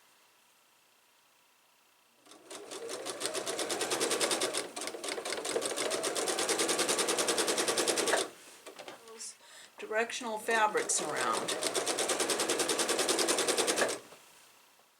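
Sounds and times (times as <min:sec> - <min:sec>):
sewing machine running: 0:02.2 - 0:08.4, 0:10.6 - 0:14.1.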